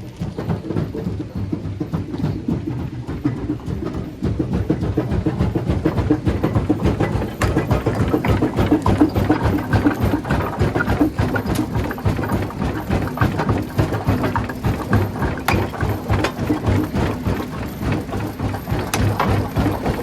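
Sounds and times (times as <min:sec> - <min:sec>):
rock crusher rumbling: 0:00.0 - 0:20.0
rocks clattering: 0:05.5 - 0:20.0.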